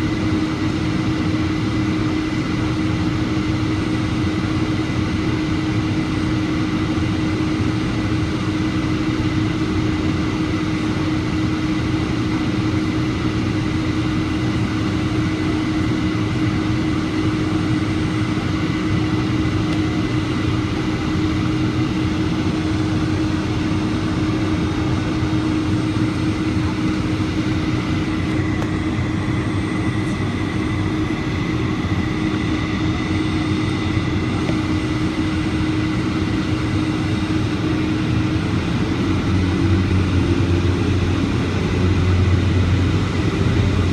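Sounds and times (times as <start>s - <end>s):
airliner cabin engine drone: 0.0s - 43.9s
high whine: 13.1s - 43.9s.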